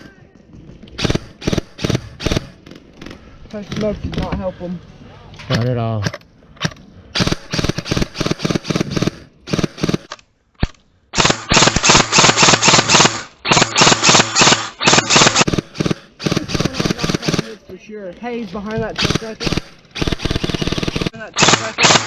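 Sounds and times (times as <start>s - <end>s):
airsoft rifles rapid-firing: 1.0s - 3.9s, 6.6s - 17.6s, 18.9s - 22.0s.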